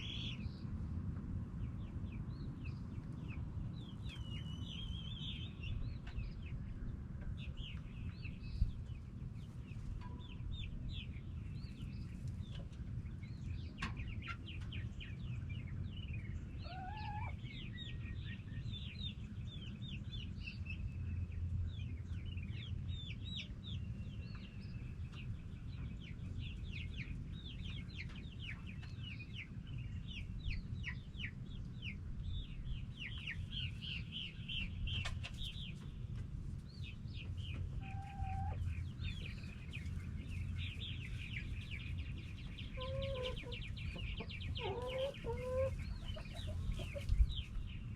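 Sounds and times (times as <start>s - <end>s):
hens clucking: 16.6s - 17.4s, 37.2s - 47.6s.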